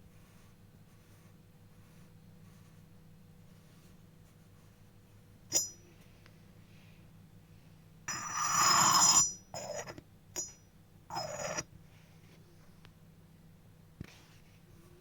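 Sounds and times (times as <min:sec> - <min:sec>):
clay scraping on clay: 0:00.0 - 0:05.0, 0:08.1 - 0:12.4
clay teapot clinking: 0:08.1 - 0:11.6.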